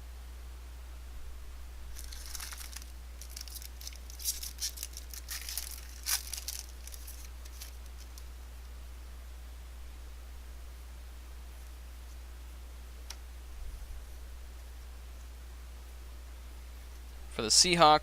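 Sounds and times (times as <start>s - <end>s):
low hum: 0.0s - 17.5s
foil wrapper tearing and crinkling: 1.9s - 8.3s.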